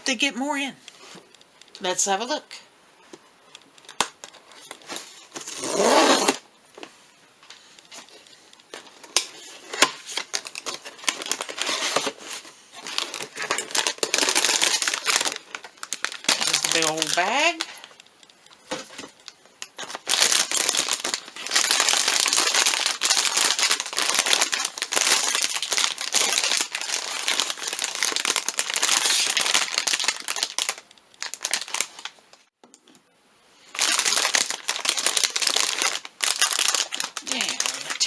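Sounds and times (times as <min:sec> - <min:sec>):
plastic bag crinkling: 0:07.9 - 0:32.5, 0:33.7 - 0:38.0.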